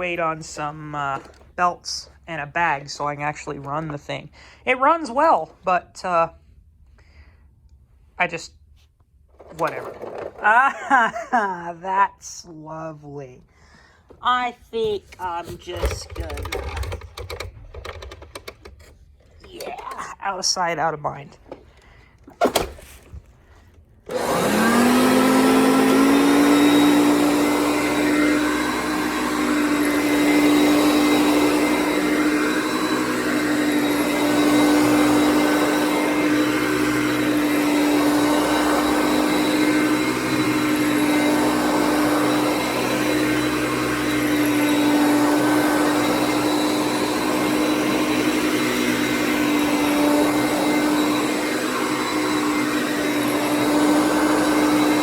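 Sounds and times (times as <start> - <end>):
vacuum cleaner motor running: 0.0 - 1.6, 9.4 - 11.2, 14.8 - 20.1, 21.5 - 55.0.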